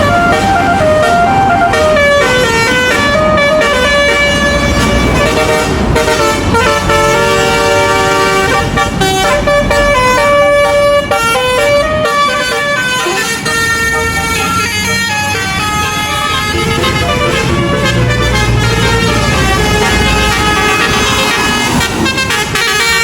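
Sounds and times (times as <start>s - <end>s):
bus horn playing a melody: 0.0s - 23.0s
vehicle rumble: 0.0s - 23.0s.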